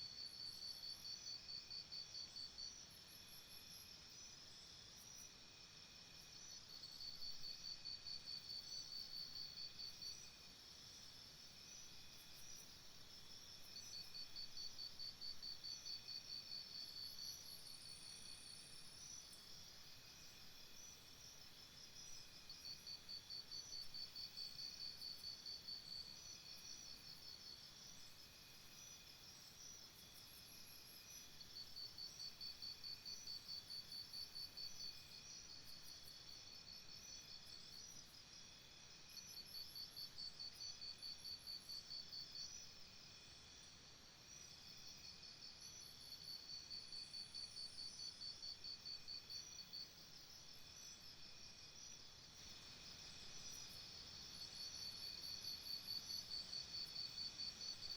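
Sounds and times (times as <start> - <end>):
high-pitched cricket trill: 11.6 - 57.9.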